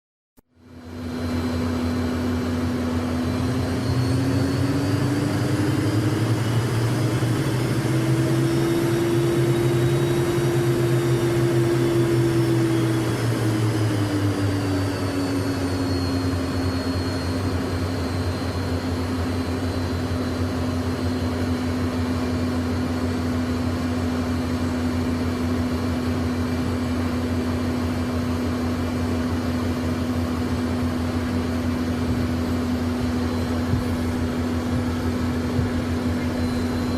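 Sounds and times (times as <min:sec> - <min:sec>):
jet engines whining: 0:00.6 - 0:36.9.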